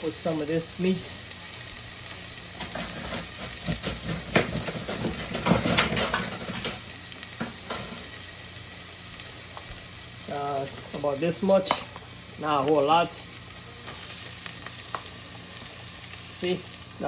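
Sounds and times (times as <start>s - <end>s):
meat sizzling in oil: 0.0s - 17.0s
utensil scraping a pot: 2.6s - 6.8s.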